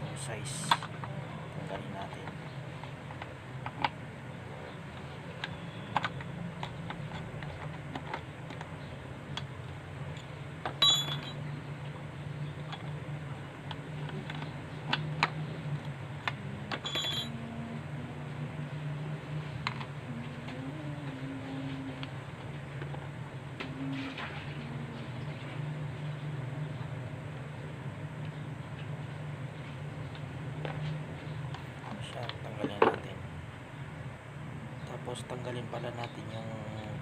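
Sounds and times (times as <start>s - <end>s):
steady low hum: 0.0s - 37.0s
metal tools and screws clinking: 10.2s - 11.4s, 16.7s - 17.3s
ringing metallic clinks: 10.8s - 11.4s, 16.8s - 17.4s.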